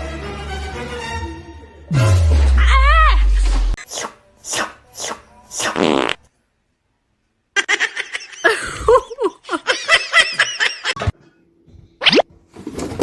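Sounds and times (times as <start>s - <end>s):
person laughing: 7.6s - 11.1s.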